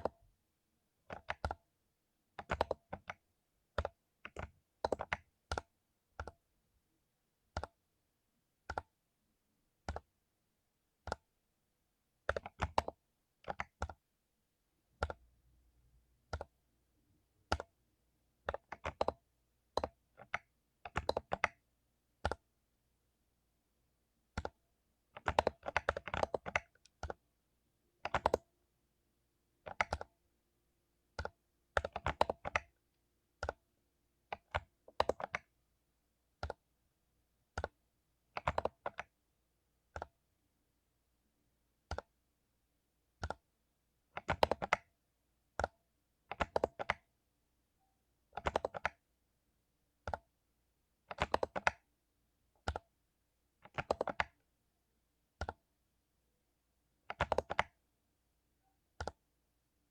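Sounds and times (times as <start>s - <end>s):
mechanical keyboard typing: 1.1s - 1.6s, 2.4s - 3.2s, 3.8s - 6.4s, 8.6s - 9.0s, 9.8s - 10.1s, 12.2s - 14.0s, 15.0s - 15.3s, 16.2s - 16.6s, 17.4s - 17.8s, 18.4s - 21.6s, 24.3s - 24.6s, 25.2s - 27.2s, 28.0s - 28.5s, 29.6s - 30.1s, 31.1s - 32.8s, 34.3s - 35.5s, 36.4s - 36.6s, 37.5s - 39.2s, 39.9s - 40.1s, 41.8s - 42.2s, 43.2s - 43.4s, 44.2s - 44.9s, 46.3s - 47.1s, 48.3s - 49.0s, 51.0s - 51.9s, 52.6s - 52.9s, 53.6s - 54.4s, 55.4s - 55.6s, 57.0s - 57.8s, 58.9s - 59.3s.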